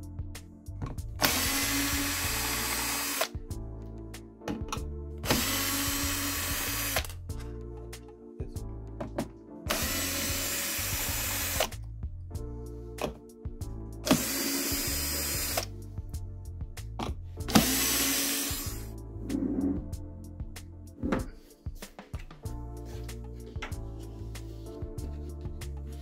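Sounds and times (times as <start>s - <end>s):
background music with bass: 0.0s - 26.0s
electric screwdriver running: 1.2s - 3.4s, 5.2s - 7.2s, 9.7s - 11.7s, 14.1s - 15.7s, 17.5s - 18.9s.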